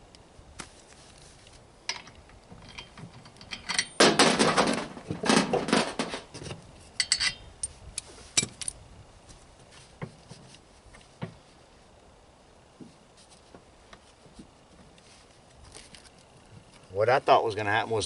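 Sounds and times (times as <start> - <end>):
metal hand tools clattering: 1.9 - 6.3.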